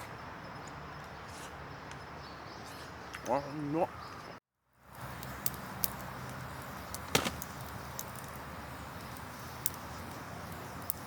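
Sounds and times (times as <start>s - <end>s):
steady outdoor hiss: 0.0s - 11.0s
sharp clicks and knocks: 7.1s - 7.5s.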